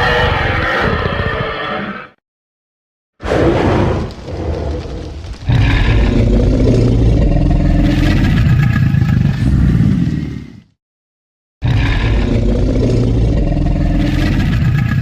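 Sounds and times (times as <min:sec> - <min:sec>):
loud creature cry: 0:00.0 - 0:02.2
deep rumbling roar: 0:03.2 - 0:10.7, 0:11.6 - 0:15.0.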